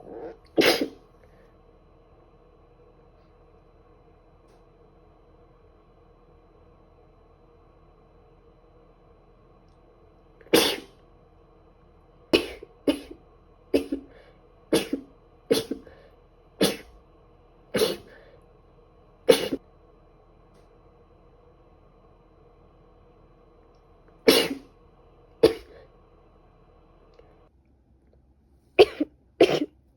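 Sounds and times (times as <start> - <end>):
woman sneezing: 0.6 - 1.0, 10.5 - 10.9, 24.3 - 24.7.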